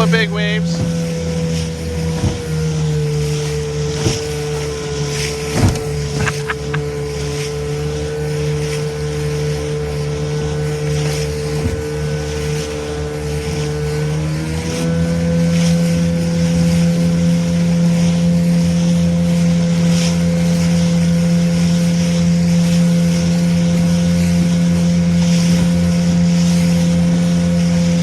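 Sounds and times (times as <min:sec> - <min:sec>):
water splashing: 0:00.0 - 0:14.8
motorboat engine running: 0:00.0 - 0:28.0
wind: 0:00.0 - 0:28.0.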